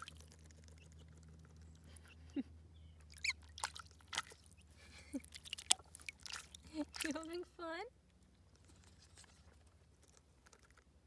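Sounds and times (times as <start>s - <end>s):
small splashes in water: 0.0s - 0.5s, 3.1s - 7.4s
low steady hum: 0.0s - 11.0s.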